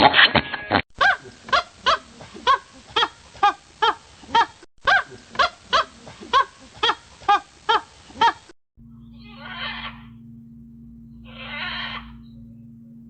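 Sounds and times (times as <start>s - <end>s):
goose honking: 9.2s - 10.1s, 11.3s - 12.2s.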